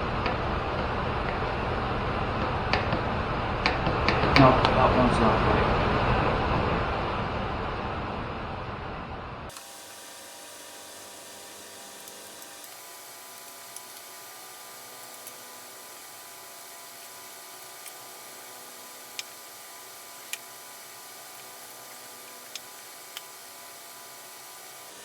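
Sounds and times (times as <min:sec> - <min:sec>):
faint steady hiss: 0:09.5 - 0:25.0
loud rushing hiss: 0:09.5 - 0:25.0.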